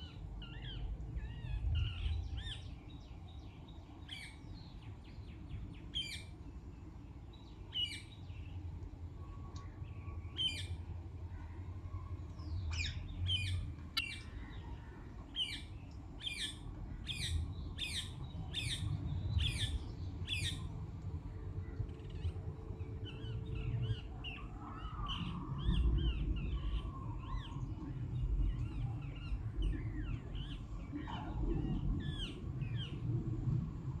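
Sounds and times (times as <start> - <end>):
low rumble: 18.3 - 34.0.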